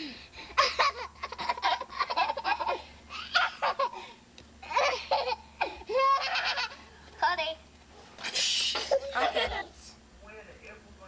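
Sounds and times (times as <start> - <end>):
children laughing: 0.6 - 6.9, 8.6 - 9.8.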